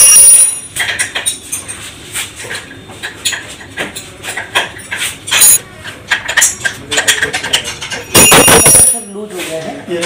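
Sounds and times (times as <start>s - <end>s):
metallic tool clinks: 0.0s - 1.6s, 8.1s - 9.2s.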